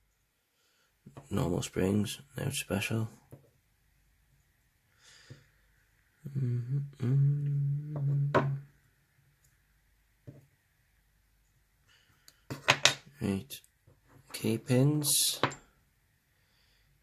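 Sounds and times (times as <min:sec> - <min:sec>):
faint breath: 0:04.9 - 0:05.7, 0:11.8 - 0:12.5, 0:16.3 - 0:17.0
man humming low note: 0:06.2 - 0:08.7.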